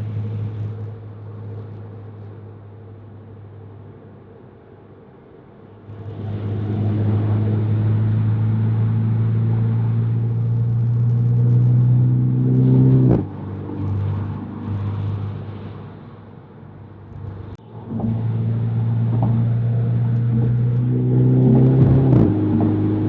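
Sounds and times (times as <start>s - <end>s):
car engine revving: 5.9s - 16.2s, 17.0s - 23.0s.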